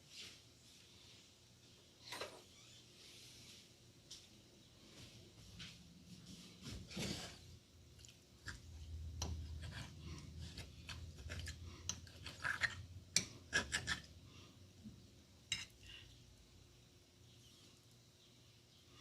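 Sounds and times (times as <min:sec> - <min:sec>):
fork scraping on plate: 0:08.5 - 0:14.1, 0:15.5 - 0:15.9.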